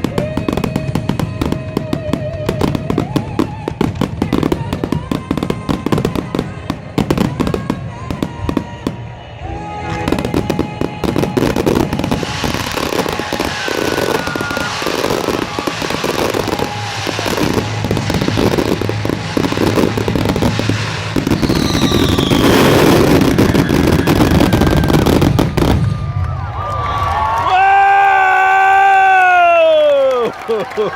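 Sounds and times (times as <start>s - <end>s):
firework whistles: 0.0s - 26.2s
firework bursts and crackling: 0.0s - 30.9s
music: 3.7s - 13.2s.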